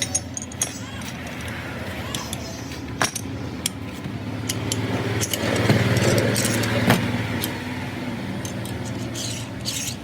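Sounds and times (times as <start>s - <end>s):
engine humming: 0.0s - 10.0s
sharp metallic clicks: 4.4s - 7.6s.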